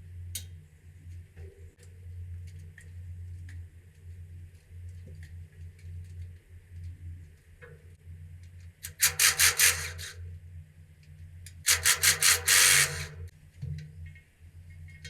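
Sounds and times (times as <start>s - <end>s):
steady low hum: 0.0s - 15.0s
ratchet wrench rasping: 8.9s - 10.2s, 11.7s - 13.3s.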